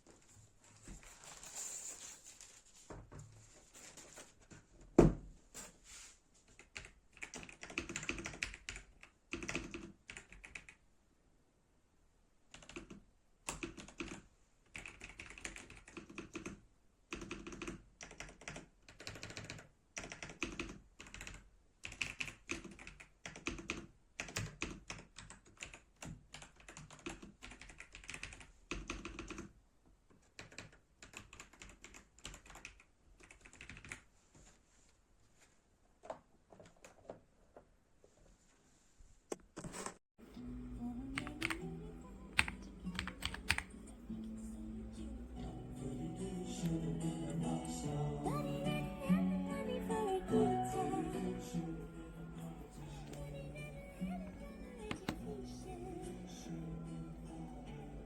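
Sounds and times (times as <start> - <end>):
mechanical keyboard key clicks: 42.4 - 43.7, 54.9 - 55.2.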